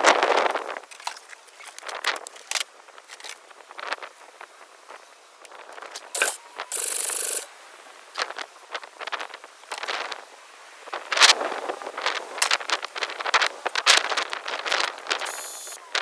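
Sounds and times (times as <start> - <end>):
loud hissing burst: 6.1 - 7.5, 15.2 - 16.0.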